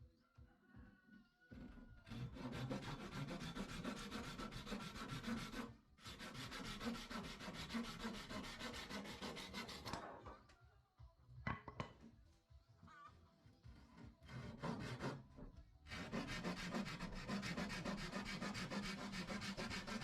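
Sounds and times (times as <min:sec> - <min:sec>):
sanding wood: 0:02.1 - 0:09.9, 0:14.3 - 0:15.2, 0:15.9 - 0:20.0.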